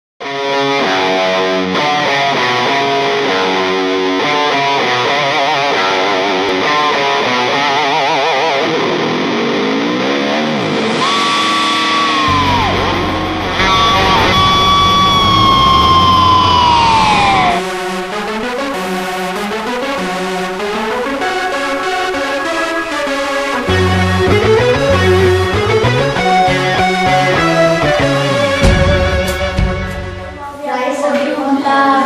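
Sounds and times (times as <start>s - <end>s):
distorted electric guitar: 0.2s - 30.6s
heavy low backing: 8.7s - 18.5s, 19.1s - 30.6s.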